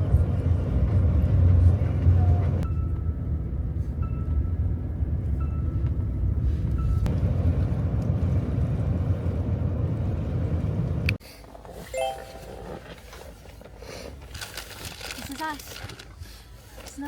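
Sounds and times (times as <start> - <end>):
car cabin road rumble: 0.0 - 11.2
short clear tone: 12.0 - 12.9.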